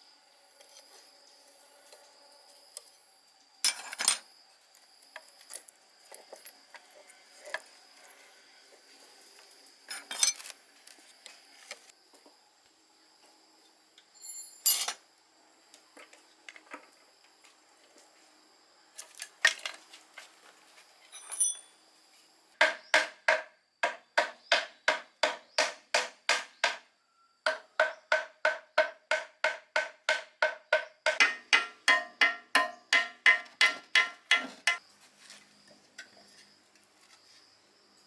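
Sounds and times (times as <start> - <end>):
metal tools clinking: 3.6 - 4.2, 9.9 - 10.6, 14.2 - 15.0, 21.0 - 21.8.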